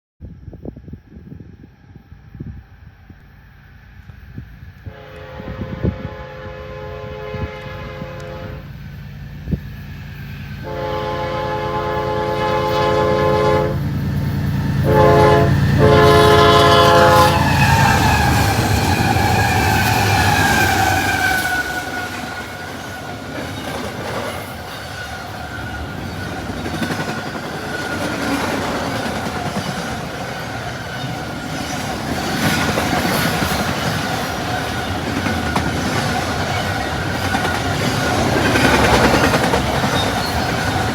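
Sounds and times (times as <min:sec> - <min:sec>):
train rushing past with whine: 0:00.2 - 0:40.9
locomotive horn blasts: 0:04.8 - 0:08.8, 0:10.6 - 0:13.9, 0:14.8 - 0:22.2
wheels clattering over rail joints: 0:17.7 - 0:40.9.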